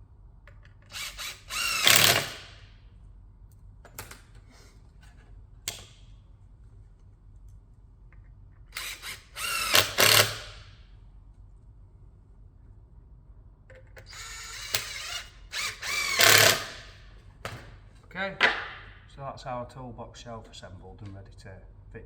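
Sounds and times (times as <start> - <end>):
power drill driving screws: 0.9 - 2.6, 8.8 - 10.7, 14.1 - 17.0.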